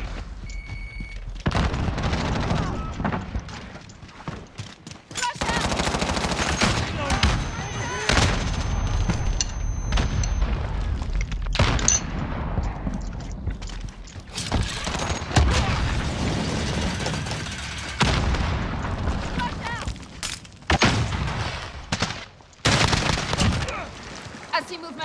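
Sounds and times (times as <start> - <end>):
video game automatic gunfire: 5.3 - 9.3, 14.6 - 19.3, 22.6 - 23.6.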